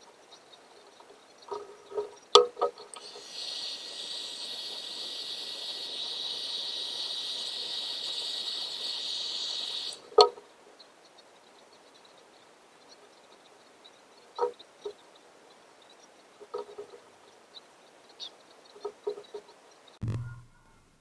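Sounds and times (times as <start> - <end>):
heat gun blowing air: 3.0 - 10.0.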